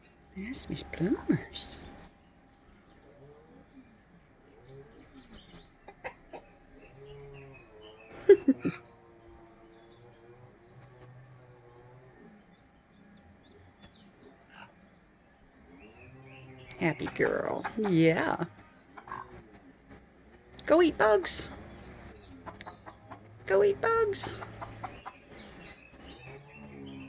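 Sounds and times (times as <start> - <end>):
hen clucking softly: 4.7 - 7.1, 17.0 - 18.0, 18.9 - 19.6, 22.3 - 23.4, 24.2 - 25.6
hen calling loudly: 22.5 - 24.9.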